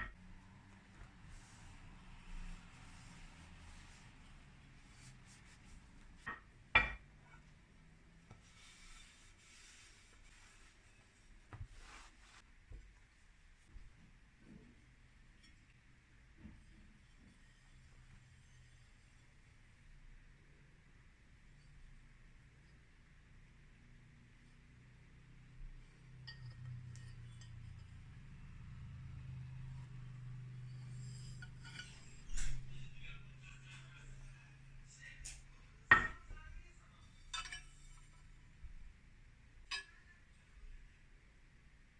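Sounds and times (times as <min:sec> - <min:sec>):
low steady hum: 0:00.0 - 0:41.9
soft rubbing or scraping: 0:00.1 - 0:06.6, 0:07.2 - 0:12.5, 0:25.7 - 0:38.9
glass and kitchenware clinking: 0:06.3 - 0:07.1, 0:26.1 - 0:28.2, 0:35.9 - 0:36.4, 0:37.1 - 0:38.0.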